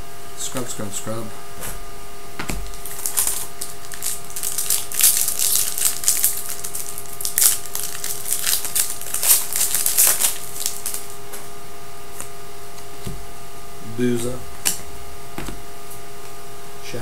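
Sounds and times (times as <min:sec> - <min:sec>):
crinkling wrappers: 0:02.6 - 0:11.5.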